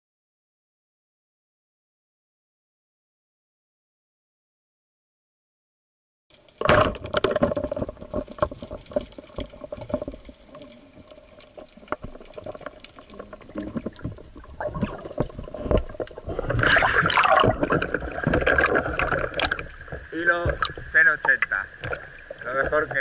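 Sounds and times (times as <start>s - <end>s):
underwater crackle of clicks: 6.3s - 23.0s
rush of water: 6.9s - 23.0s
faint water hiss: 9.0s - 23.0s.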